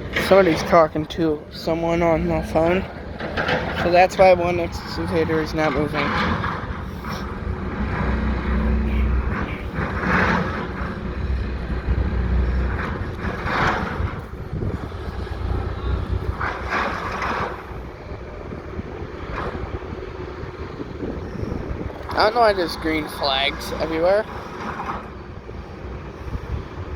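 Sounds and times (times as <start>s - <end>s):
excavator diesel engine rumbling: 0.0s - 26.9s.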